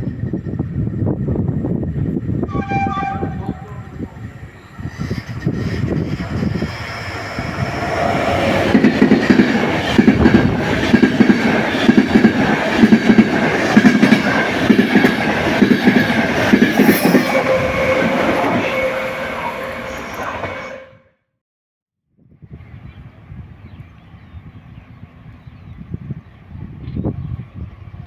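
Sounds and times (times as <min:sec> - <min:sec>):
train rumble: 0:00.0 - 0:21.0
train wheels clacking over rail joints: 0:08.6 - 0:17.3.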